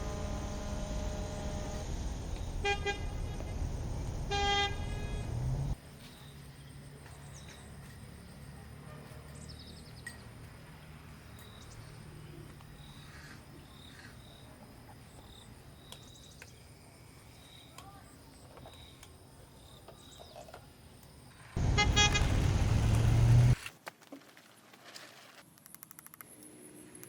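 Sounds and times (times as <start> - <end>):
vehicle horn toot: 0.0 - 1.8, 2.6 - 3.3, 4.3 - 5.5, 21.6 - 22.8
road traffic noise: 0.0 - 14.1, 21.4 - 23.6.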